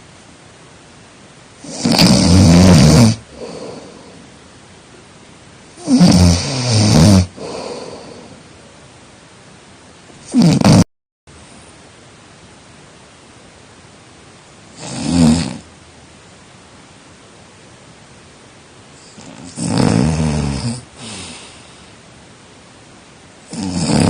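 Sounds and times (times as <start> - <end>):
person snoring loudly: 1.6 - 4.2, 5.8 - 8.4, 10.2 - 10.9, 14.8 - 15.7, 19.0 - 21.7, 23.5 - 24.0.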